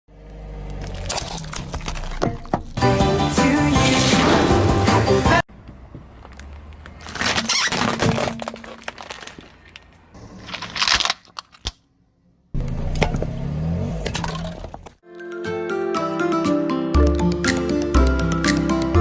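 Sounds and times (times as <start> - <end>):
car engine running low: 0.1 - 2.8, 12.6 - 15.0
tyres crushing objects: 0.7 - 2.9, 6.9 - 11.8.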